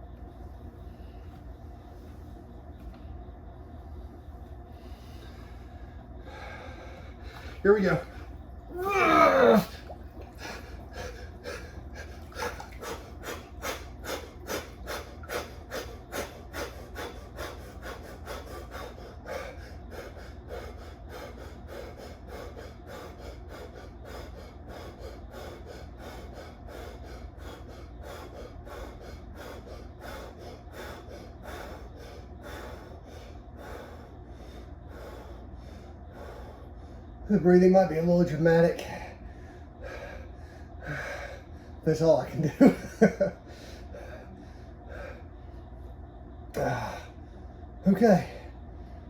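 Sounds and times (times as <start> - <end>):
man breathing fast and hard: 4.7 - 8.4, 10.3 - 37.2, 38.8 - 41.8, 43.4 - 45.8
man gasping cry: 8.7 - 9.9.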